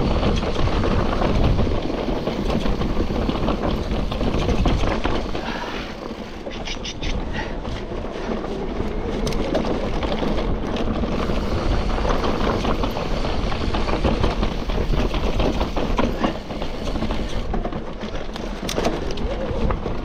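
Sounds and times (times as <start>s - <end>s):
bike frame and chain rattling: 0.0s - 20.0s
bike tyres on dirt and rock: 0.0s - 20.0s.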